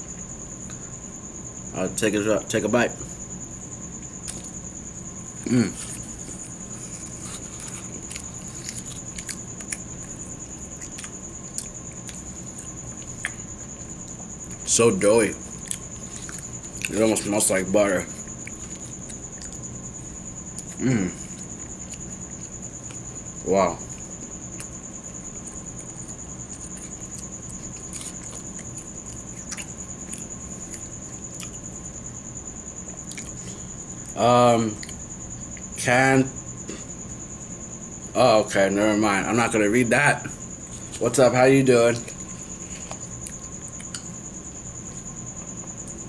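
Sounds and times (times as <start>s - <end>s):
faint high-pitched whine: 0.0s - 46.0s
person chewing: 4.2s - 4.6s, 5.3s - 14.7s, 15.3s - 31.7s, 33.0s - 34.2s, 34.8s - 35.7s, 42.0s - 45.1s.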